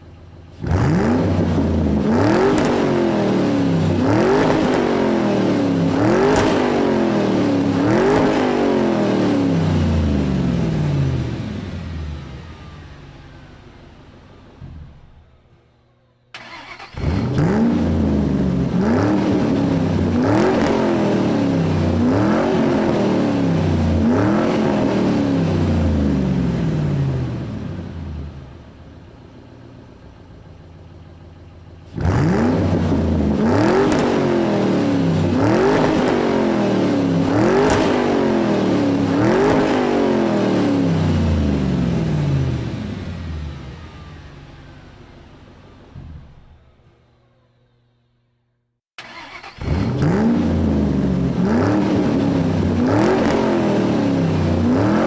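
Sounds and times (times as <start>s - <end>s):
engine revving in quick blips: 0.6s - 12.8s, 16.4s - 27.8s, 31.8s - 44.4s, 49.0s - 55.0s.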